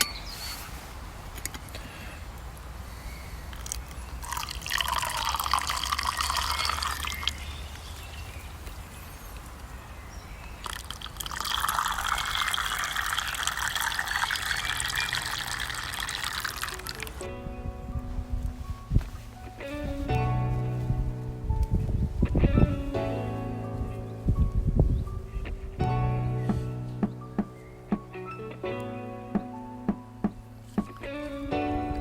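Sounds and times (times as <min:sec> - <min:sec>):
liquid pouring into container: 0:04.2 - 0:07.3, 0:10.6 - 0:17.2.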